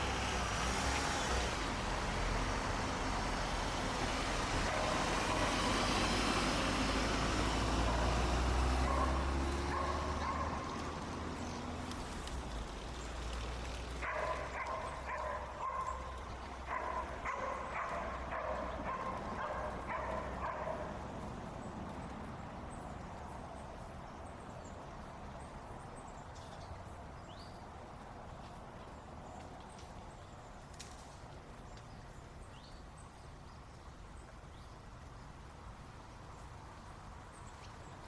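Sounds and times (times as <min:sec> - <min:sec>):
dogs barking: 0:04.6 - 0:05.6, 0:07.7 - 0:11.0, 0:14.0 - 0:21.0.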